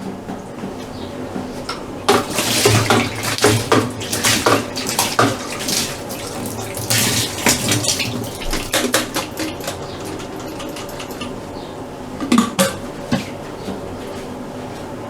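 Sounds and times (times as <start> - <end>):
knocks and clatter of handling: 0.0 - 14.3
water running and splashing: 2.0 - 11.3.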